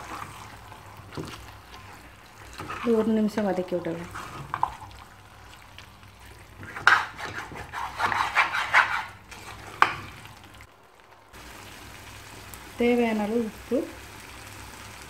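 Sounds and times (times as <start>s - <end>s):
food sauteing in pot: 0.0s - 15.0s
spoon scraping pot: 6.6s - 10.1s.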